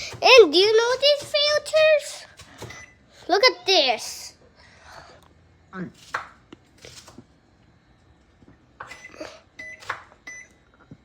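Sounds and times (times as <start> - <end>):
microwave control panel beeps: 2.6 - 3.1, 8.8 - 10.7.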